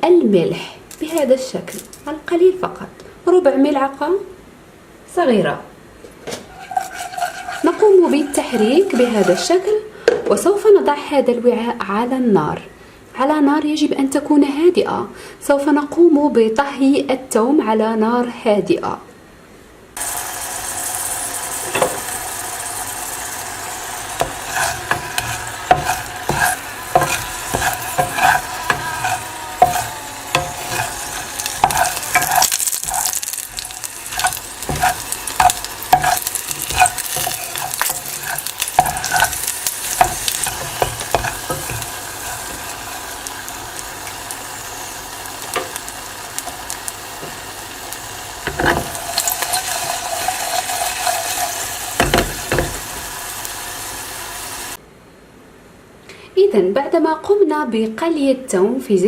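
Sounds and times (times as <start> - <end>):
garlic sizzling in oil: 6.4 - 9.9, 20.0 - 54.8.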